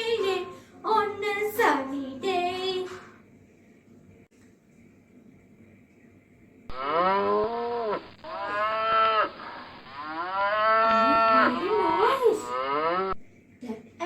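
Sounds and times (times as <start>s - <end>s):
cow mooing: 6.7s - 13.2s.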